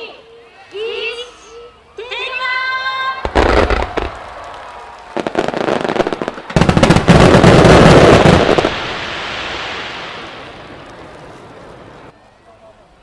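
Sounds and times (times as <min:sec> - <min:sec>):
fireworks booming and crackling: 0:03.2 - 0:12.1.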